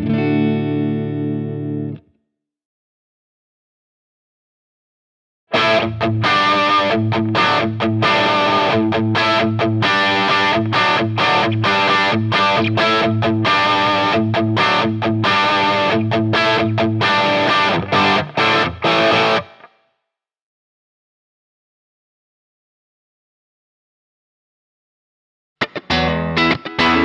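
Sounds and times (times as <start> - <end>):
distorted electric guitar riff: 0.0 - 2.0, 5.5 - 19.8, 25.6 - 27.0.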